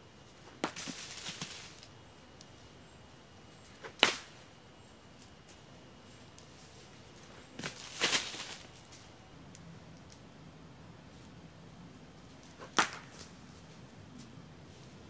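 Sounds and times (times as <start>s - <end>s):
whip-like cracks of thrown bolas: 3.8s - 4.4s, 7.6s - 8.7s, 12.5s - 13.3s.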